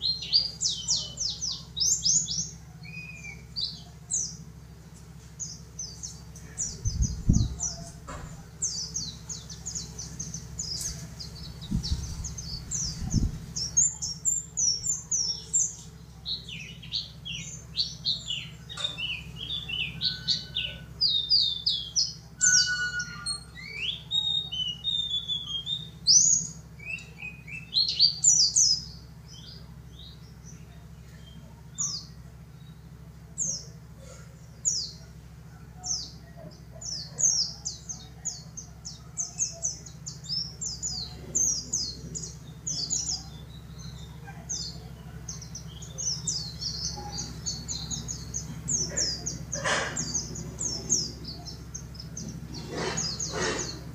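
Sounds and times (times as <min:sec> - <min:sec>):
bird chirping and twittering: 0:00.0 - 0:53.9
low thumps: 0:06.8 - 0:08.5.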